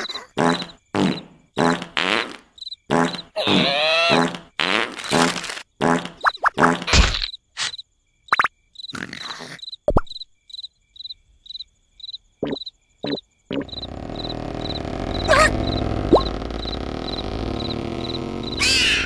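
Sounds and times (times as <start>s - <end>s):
cricket-like chirp: 0.0s - 19.0s
comic sound effects: 13.5s - 19.0s
loud continuous rumbling: 13.6s - 19.0s.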